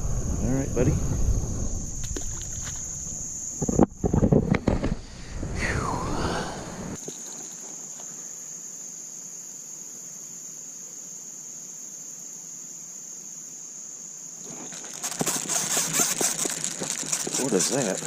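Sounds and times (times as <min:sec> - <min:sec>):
insects trilling: 0:00.0 - 0:18.0
rapid rattling clicks: 0:14.7 - 0:18.0.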